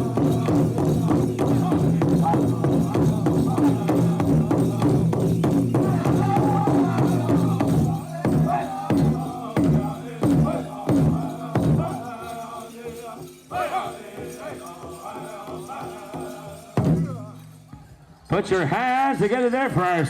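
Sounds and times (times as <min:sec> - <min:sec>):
big drum beats: 0:00.0 - 0:12.2, 0:14.8 - 0:18.5
group singing: 0:00.0 - 0:18.0.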